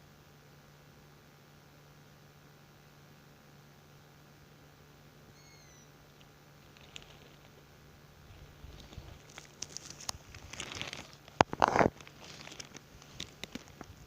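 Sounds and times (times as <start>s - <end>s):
rustling and crackling: 6.0s - 14.0s.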